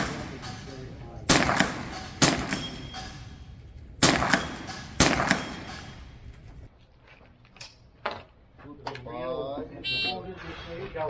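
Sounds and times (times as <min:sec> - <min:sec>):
rifle shots: 0:00.0 - 0:06.3.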